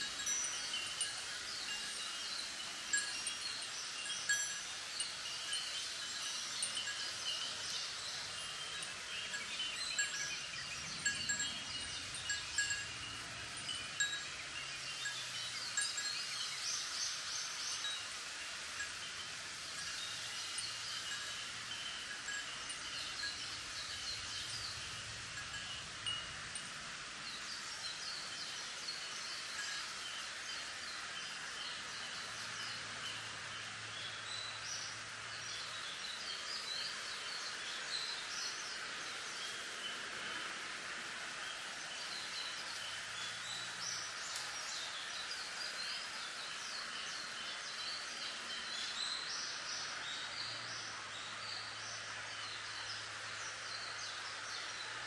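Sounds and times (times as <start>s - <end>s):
bells chiming: 0.0s - 16.7s, 18.8s - 26.8s
birds chirping: 0.0s - 18.0s
bamboo leaves rustling in wind: 0.0s - 55.0s.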